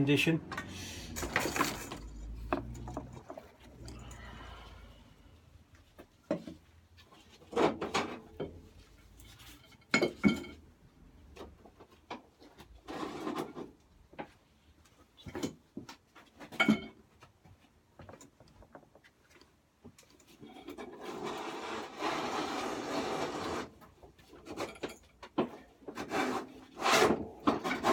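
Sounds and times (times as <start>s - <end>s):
metal parts knocking and clinking: 1.1s - 4.1s
short rubbing scrapes: 21.0s - 23.8s.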